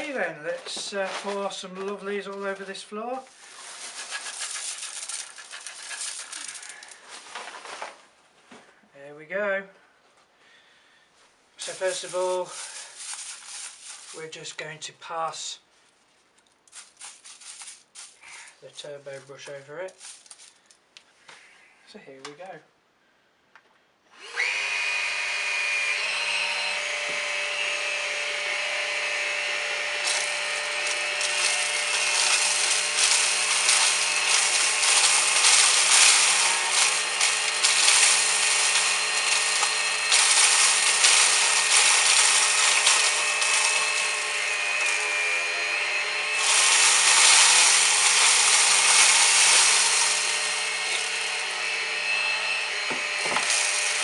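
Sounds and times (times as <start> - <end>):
cornflakes rattling in vacuum: 3.3 - 7.8, 11.6 - 14.6, 16.6 - 18.6, 19.2 - 20.8, 29.8 - 51.6, 53.2 - 54.0
vacuum motor whining: 24.2 - 54.0.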